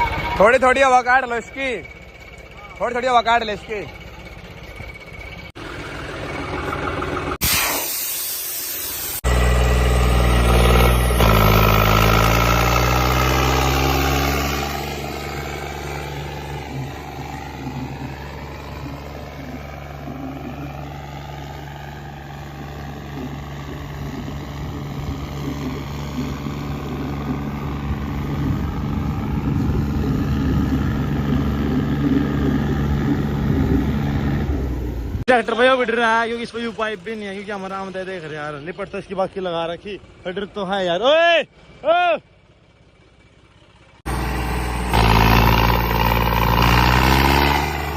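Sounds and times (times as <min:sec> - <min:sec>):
tractor diesel engine running: 0:00.0 - 0:07.4, 0:08.4 - 0:47.9
brief hiss: 0:07.4 - 0:09.2.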